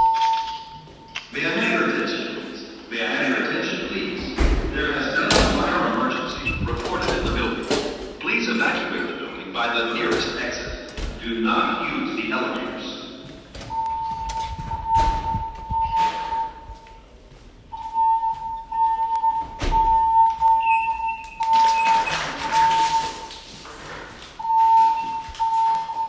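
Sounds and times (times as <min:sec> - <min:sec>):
pulsed alarm tone: 0:00.0 - 0:01.2, 0:04.7 - 0:07.7, 0:13.6 - 0:23.5, 0:24.4 - 0:26.0
recorded evacuation announcements: 0:00.0 - 0:26.0.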